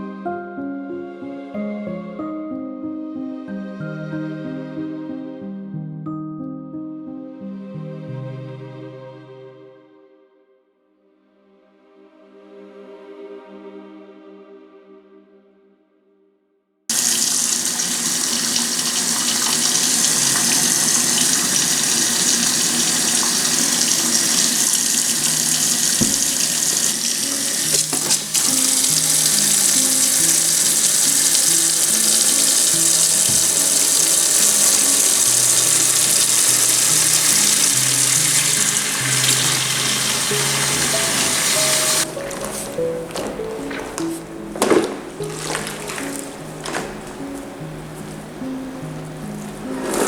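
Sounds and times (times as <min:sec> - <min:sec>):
soft background music: 0:00.0 - 0:16.1, 0:17.0 - 0:50.0
water running from a tap: 0:16.9 - 0:44.0, 0:44.6 - 0:47.2.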